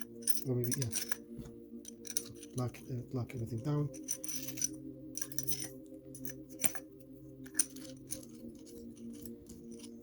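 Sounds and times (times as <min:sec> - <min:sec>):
small metal parts clicking: 0:00.0 - 0:01.2, 0:01.8 - 0:02.6, 0:04.0 - 0:06.8, 0:07.4 - 0:09.9.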